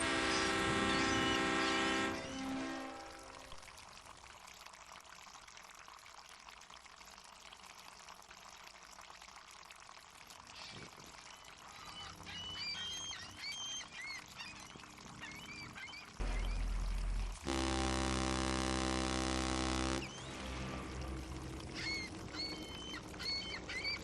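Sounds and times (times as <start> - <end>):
seagulls calling: 0.2 - 2.0, 11.6 - 16.8, 21.6 - 24.0
water washing: 14.9 - 24.0.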